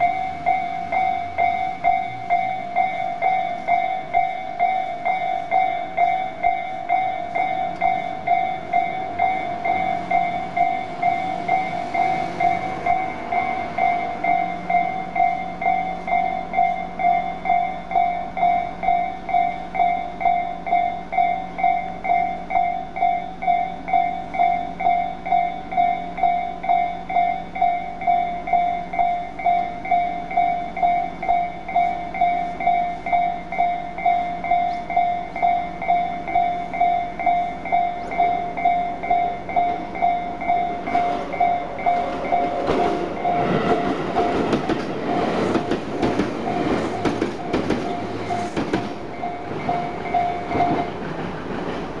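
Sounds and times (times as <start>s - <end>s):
level crossing bell ringing: 0.0s - 51.1s
train wheels clacking over rail joints: 40.9s - 49.0s.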